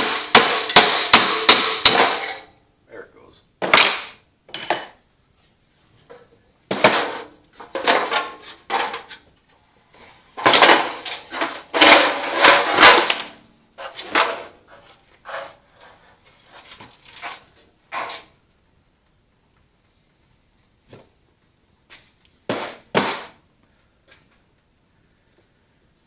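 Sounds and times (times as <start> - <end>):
metal parts knocking and clattering: 0.0 - 2.5, 3.6 - 4.9, 6.7 - 9.2, 10.4 - 14.6.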